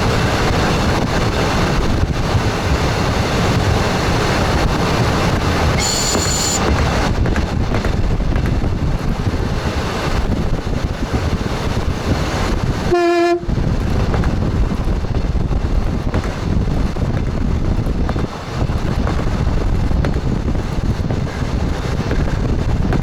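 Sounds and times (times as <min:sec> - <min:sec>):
train wheels rumbling on track: 0:00.0 - 0:23.0
train horn toot: 0:05.7 - 0:06.6, 0:12.9 - 0:13.6.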